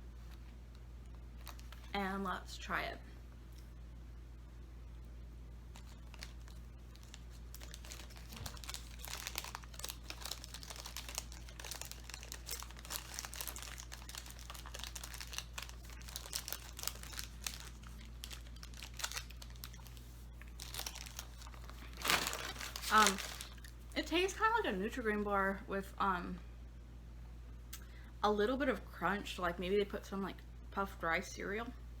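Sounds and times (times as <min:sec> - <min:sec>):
low steady hum: 0:00.0 - 0:32.0
plastic wrapper crinkling: 0:01.4 - 0:01.9, 0:05.7 - 0:24.4.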